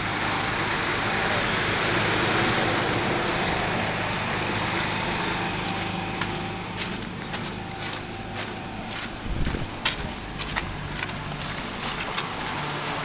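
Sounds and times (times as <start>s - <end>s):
low machinery hum: 0.0s - 13.0s.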